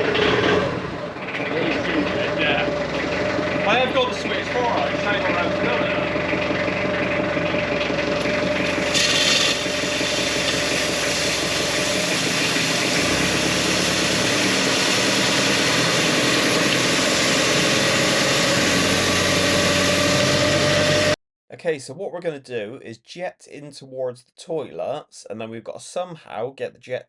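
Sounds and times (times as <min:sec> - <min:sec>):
engine running: 0:00.0 - 0:21.2.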